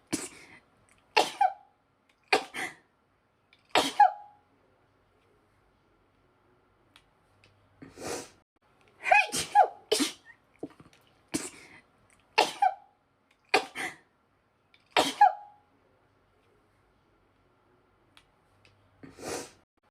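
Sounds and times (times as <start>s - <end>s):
woman sneezing: 3.8s - 4.3s, 9.0s - 10.3s, 12.4s - 12.8s, 13.5s - 14.0s, 15.0s - 15.5s.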